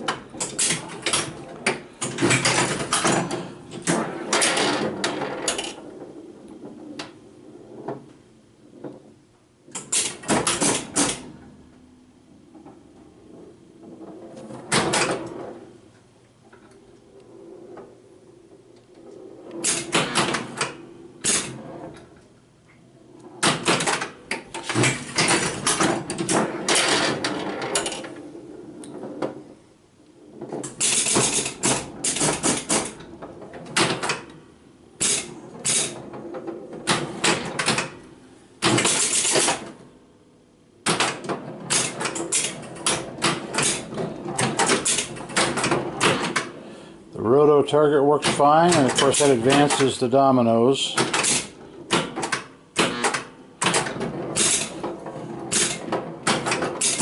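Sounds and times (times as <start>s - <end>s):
steady low hum: 0.0s - 56.8s
pinball machine clacks: 9.8s - 11.4s, 19.6s - 22.0s, 23.4s - 28.2s, 30.4s - 34.4s, 35.0s - 39.8s, 40.8s - 46.6s, 48.1s - 57.0s.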